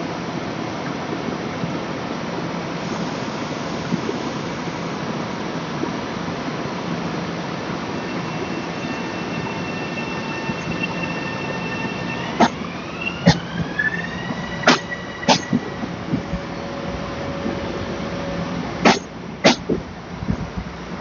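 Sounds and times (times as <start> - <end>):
train rushing on rails: 1.4 - 21.0
high wheel squeal: 7.8 - 19.8.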